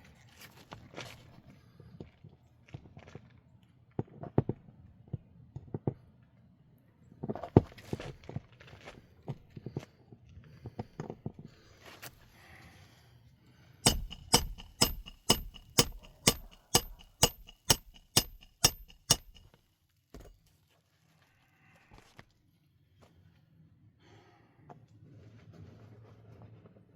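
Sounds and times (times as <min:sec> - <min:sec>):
sharp metallic strikes ringing: 0:13.9 - 0:19.5.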